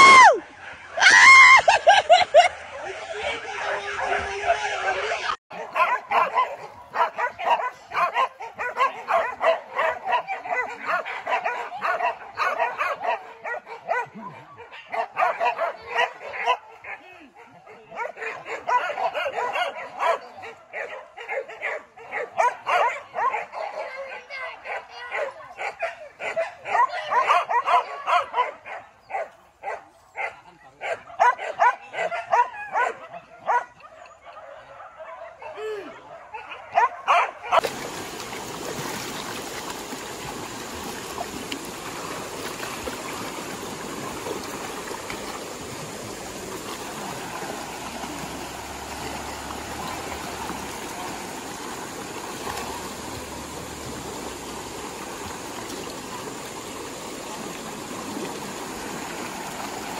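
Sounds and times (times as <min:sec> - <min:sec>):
running water rushing: 0:00.0 - 0:13.3, 0:37.5 - 0:59.9
dogs barking and yelping: 0:03.2 - 0:37.6.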